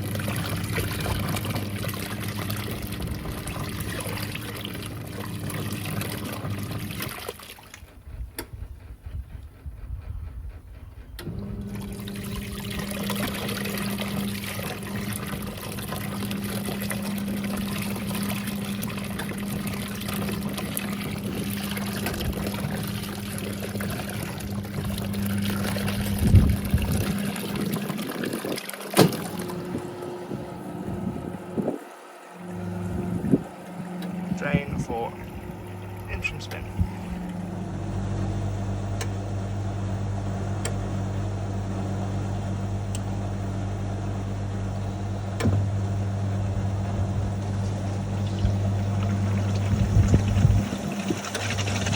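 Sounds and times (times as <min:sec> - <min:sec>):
water pouring into washing machine: 0:00.0 - 0:08.0, 0:11.2 - 0:37.8, 0:46.2 - 0:51.9
washing machine low hum: 0:00.0 - 0:51.9.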